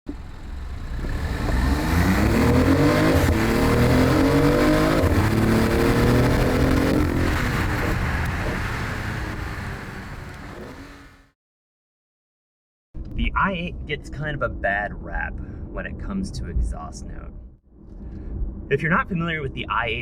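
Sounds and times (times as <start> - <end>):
car engine accelerating: 0.1 - 11.4.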